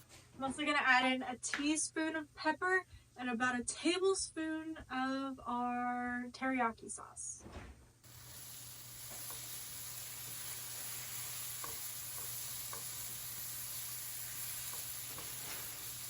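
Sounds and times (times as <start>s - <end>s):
food sizzling in a pan: 8.1s - 16.0s.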